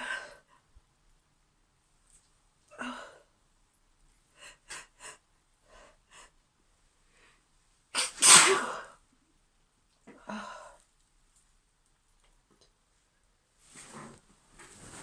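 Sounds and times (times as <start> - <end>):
woman sneezing: 8.0 - 8.9.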